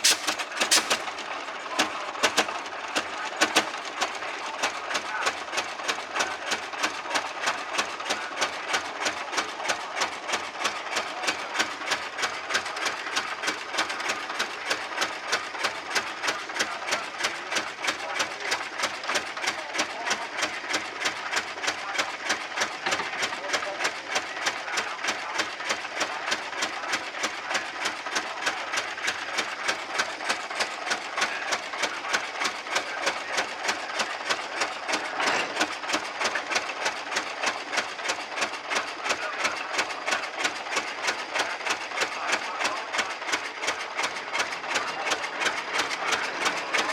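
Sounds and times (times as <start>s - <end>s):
engine running at slow beat: 0.0s - 46.9s.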